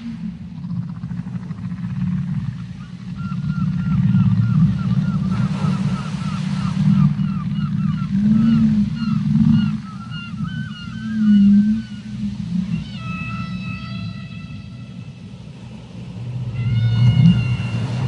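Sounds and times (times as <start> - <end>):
deep whale moans: 0.0 - 18.0
short high seagull calls: 12.7 - 15.1, 16.5 - 18.0.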